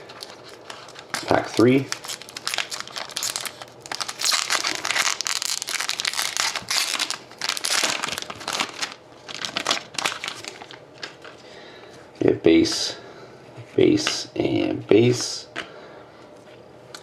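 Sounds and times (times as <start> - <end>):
wrapper torn open and crinkled: 0.2 - 11.2.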